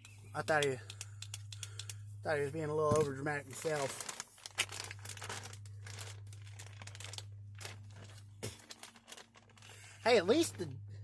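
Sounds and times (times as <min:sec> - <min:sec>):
plastic crinkling: 0:02.9 - 0:10.6.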